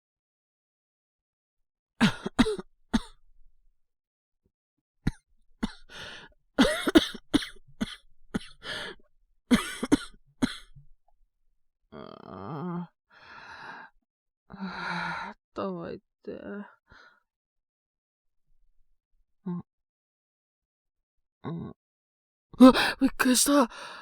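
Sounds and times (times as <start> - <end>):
man coughing: 2.0 - 3.1, 6.6 - 8.5, 9.5 - 10.6.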